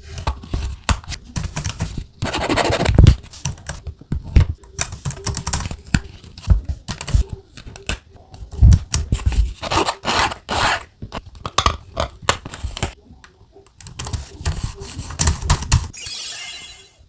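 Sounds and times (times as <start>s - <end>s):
sticker rubbing and scraping: 0.0s - 11.2s, 13.8s - 15.9s.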